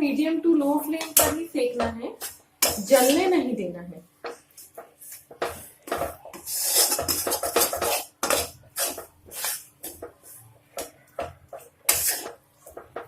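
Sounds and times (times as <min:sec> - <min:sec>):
spatula scraping a pan: 0:02.2 - 0:03.3, 0:04.6 - 0:13.0.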